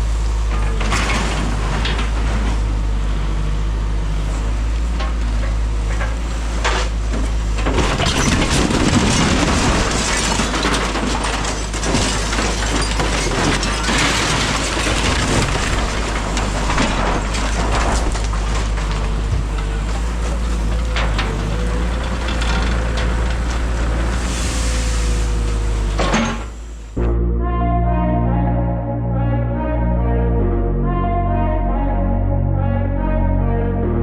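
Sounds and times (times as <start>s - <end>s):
excavator diesel engine running: 0.0s - 27.6s
debris crunching and cracking: 5.0s - 26.6s.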